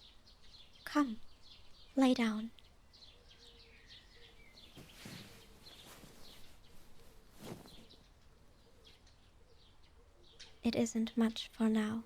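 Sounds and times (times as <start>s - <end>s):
small birds chirping: 0.0s - 12.0s
soft rustling swishes: 4.5s - 8.4s.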